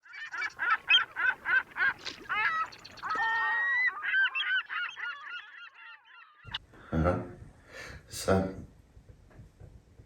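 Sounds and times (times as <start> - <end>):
birds honking: 0.0 - 6.6.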